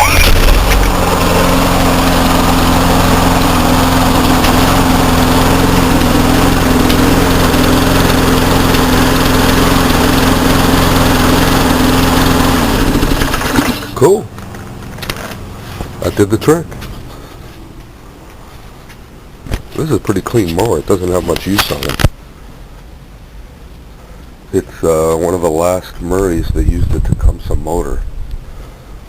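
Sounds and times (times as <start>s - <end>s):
lawnmower engine running: 0.0s - 18.0s.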